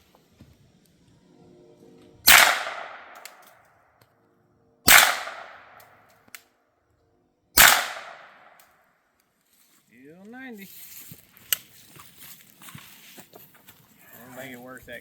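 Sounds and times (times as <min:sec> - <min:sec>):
suppressed gunshots with echo: 0:02.2 - 0:03.6, 0:04.8 - 0:06.0, 0:07.6 - 0:08.6.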